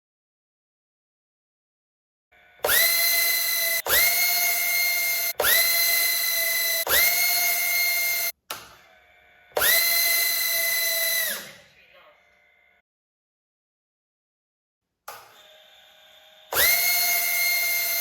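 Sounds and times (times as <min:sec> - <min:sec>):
drone motors whining: 0:02.4 - 0:11.6, 0:15.4 - 0:18.0.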